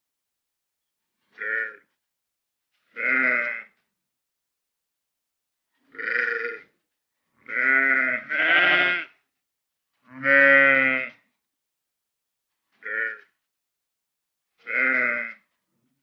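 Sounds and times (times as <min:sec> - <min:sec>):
sheep bleating: 0:01.4 - 0:01.9, 0:02.9 - 0:03.8, 0:05.8 - 0:06.8, 0:07.4 - 0:09.2, 0:10.1 - 0:11.3, 0:12.8 - 0:13.4, 0:14.6 - 0:15.5.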